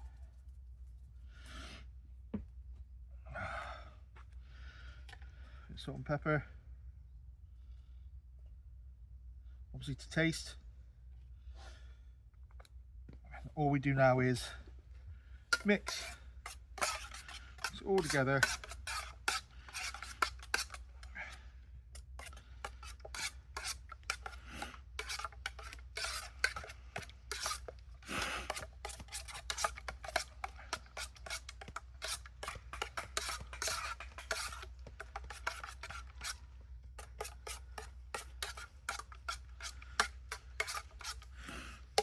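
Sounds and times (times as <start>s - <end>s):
mince being mixed in a bowl: 15.5s - 21.1s, 21.9s - 42.0s.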